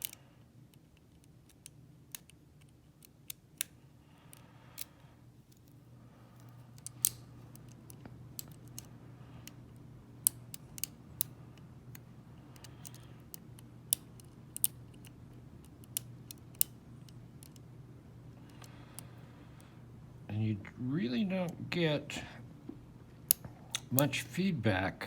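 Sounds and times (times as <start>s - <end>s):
lock pick metal clicks: 0.0s - 3.7s, 6.4s - 11.3s, 11.9s - 17.7s.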